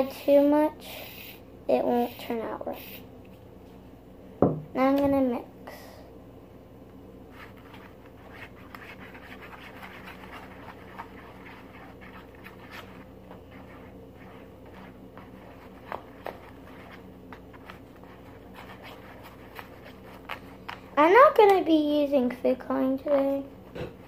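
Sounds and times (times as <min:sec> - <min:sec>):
low steady hum: 0:00.0 - 0:24.0
stirring scrapes and squelches: 0:07.3 - 0:20.9.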